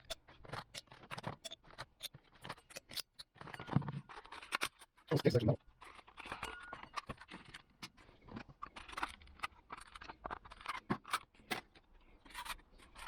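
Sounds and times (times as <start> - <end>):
metal tool bits clinking and scraping: 5.9 - 7.2.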